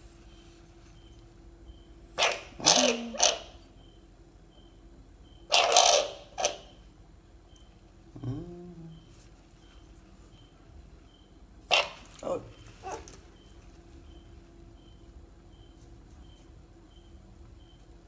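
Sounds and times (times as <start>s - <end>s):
insect chirping: 0.2s - 18.0s
harsh animal cries: 2.2s - 3.6s, 8.2s - 9.1s, 11.7s - 13.1s.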